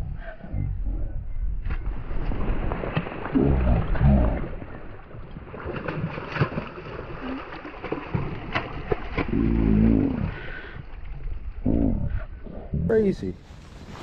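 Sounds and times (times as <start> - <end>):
wind rumbling on microphone: 8.1 - 14.0.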